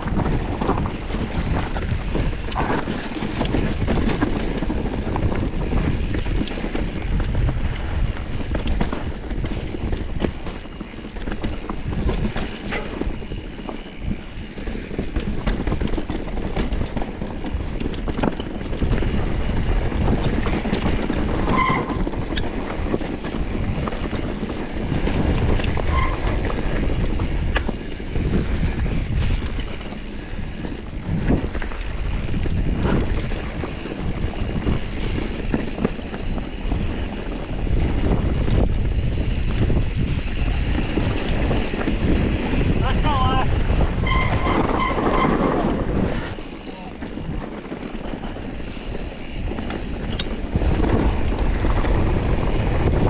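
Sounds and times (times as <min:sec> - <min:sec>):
bike rattling over stones: 0:00.0 - 0:53.0
wind buffeting microphone: 0:00.0 - 0:53.0
bike squeaks: 0:08.8 - 0:18.6, 0:21.0 - 0:31.3, 0:43.8 - 0:50.6.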